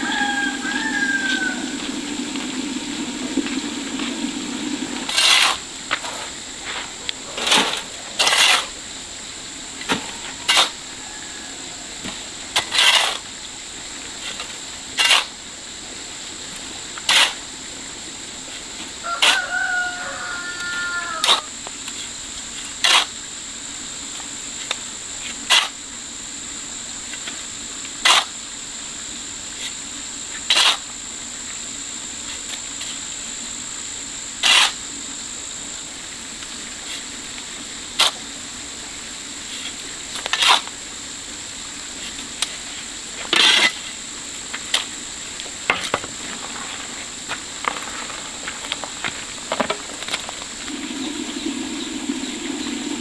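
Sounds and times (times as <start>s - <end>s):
low hum: 0.0s - 5.2s, 50.3s - 53.0s
high-pitched whine: 0.0s - 11.9s, 48.4s - 53.0s.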